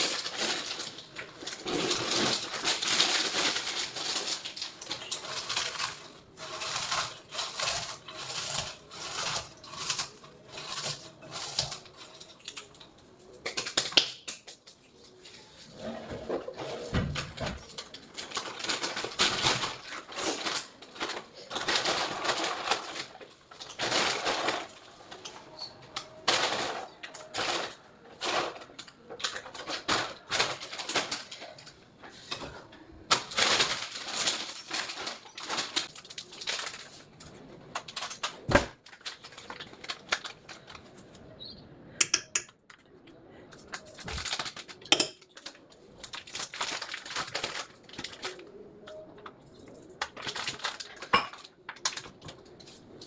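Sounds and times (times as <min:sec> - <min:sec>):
kitchen utensils scraping and clattering: 0:00.0 - 0:12.8, 0:14.9 - 0:41.2, 0:43.5 - 0:53.0.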